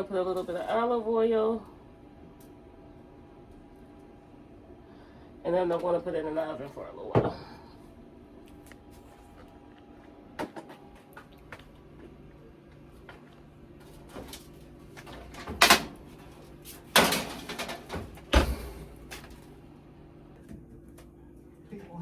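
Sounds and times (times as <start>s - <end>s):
oven door shutting: 15.0s - 16.1s, 16.9s - 18.9s.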